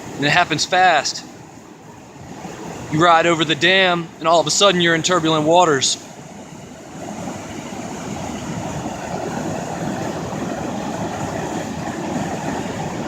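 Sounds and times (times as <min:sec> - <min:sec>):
turbulent water rushing: 0:00.0 - 0:13.0.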